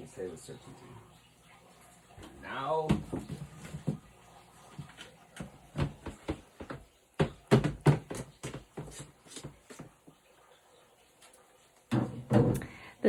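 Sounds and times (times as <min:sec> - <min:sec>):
sharp knocks and clatters: 0:02.8 - 0:04.1, 0:05.4 - 0:10.0, 0:11.9 - 0:12.7.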